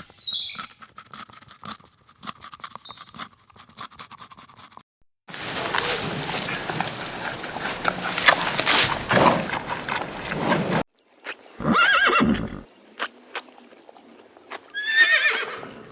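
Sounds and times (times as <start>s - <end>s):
hoof clops: 5.3s - 10.8s
horse whinnying: 5.3s - 10.8s, 11.6s - 12.7s, 14.8s - 15.7s
rough scraping noise: 5.3s - 10.8s.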